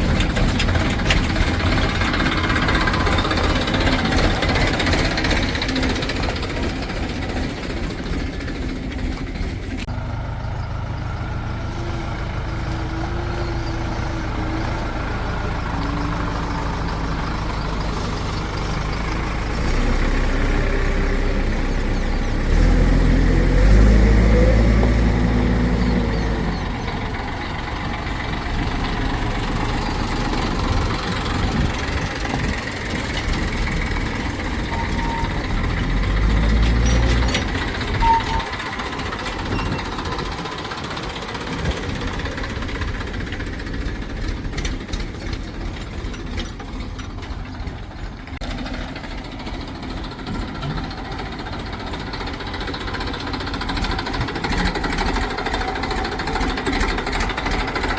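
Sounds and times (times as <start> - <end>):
heavy machinery diesel engine: 0.0 - 57.9.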